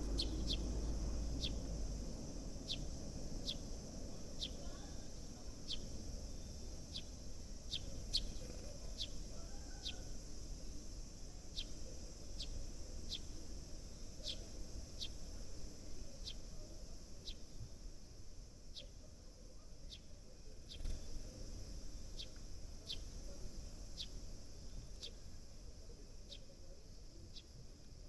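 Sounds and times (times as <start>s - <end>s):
sparrows chirping: 0.0s - 17.6s, 19.8s - 25.2s
steady high hiss: 0.0s - 28.0s.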